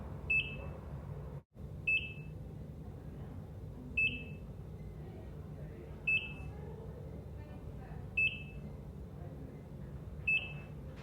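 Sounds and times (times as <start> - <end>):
heart monitor beeping: 1.9 - 2.3.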